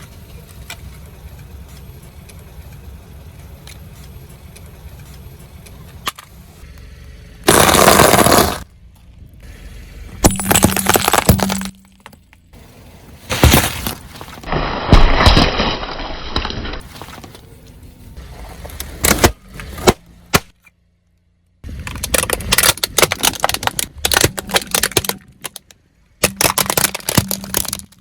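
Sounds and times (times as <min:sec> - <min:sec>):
tyres crunching brittle objects: 0:07.5 - 0:08.7, 0:13.3 - 0:17.5, 0:21.7 - 0:28.0.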